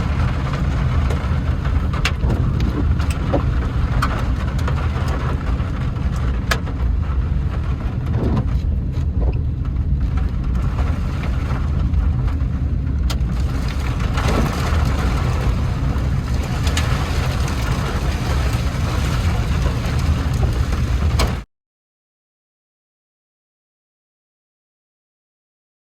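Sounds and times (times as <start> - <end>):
rain hissing: 0.0 - 8.9, 9.8 - 21.4
engine and road rumble: 0.0 - 21.5.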